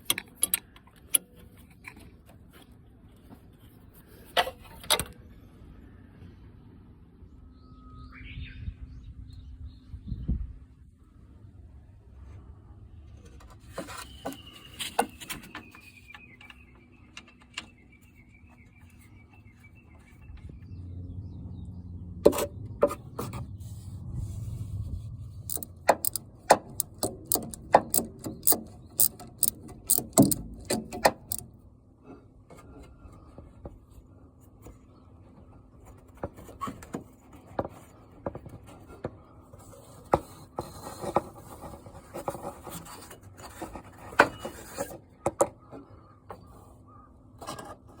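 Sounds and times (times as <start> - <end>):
sharp metallic clicks and knocks: 0.0 - 1.4, 25.4 - 31.6
rubbing and scraping: 22.3 - 31.4, 39.5 - 45.0.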